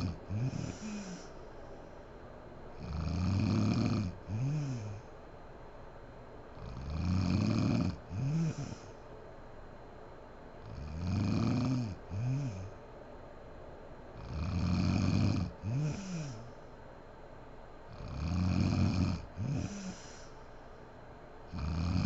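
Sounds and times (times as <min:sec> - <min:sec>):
woman snoring: 0:00.0 - 0:01.4, 0:02.8 - 0:05.1, 0:06.6 - 0:08.9, 0:10.6 - 0:12.8, 0:14.2 - 0:16.5, 0:17.9 - 0:20.3, 0:21.5 - 0:22.0.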